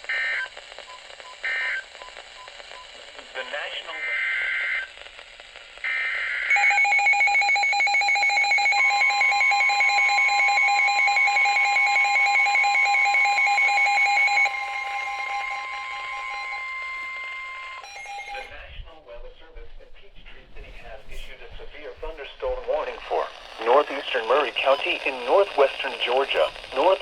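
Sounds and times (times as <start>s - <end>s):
warbling beeping alarm: 6.5s - 18.6s
long steady attention tone: 6.5s - 19.0s, 22.2s - 27.0s.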